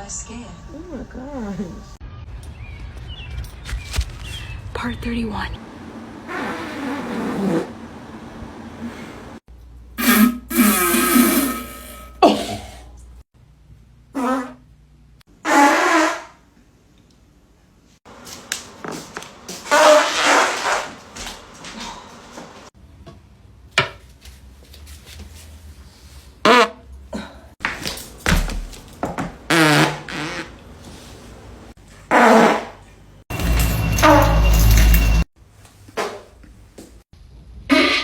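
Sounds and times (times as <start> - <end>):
person farting: 6.3 - 7.7, 10.0 - 12.8, 14.2 - 14.6, 15.4 - 16.4, 26.4 - 26.8, 29.5 - 30.5, 32.1 - 32.8.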